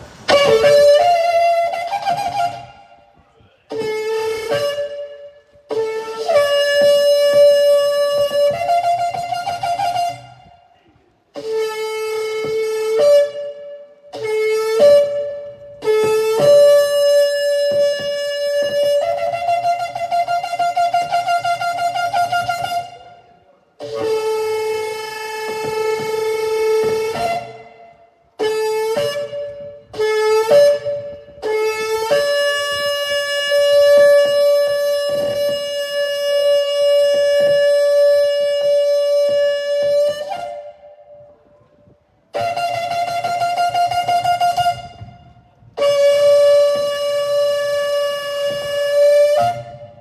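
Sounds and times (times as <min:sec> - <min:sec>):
shofar blasts: 0:00.1 - 0:10.6, 0:23.8 - 0:41.3, 0:42.3 - 0:50.0.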